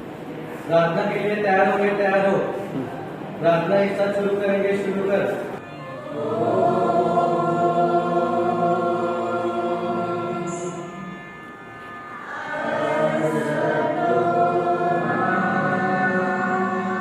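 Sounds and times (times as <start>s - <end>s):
crowd singing a prayer in unison: 5.8s - 11.1s, 12.2s - 17.0s.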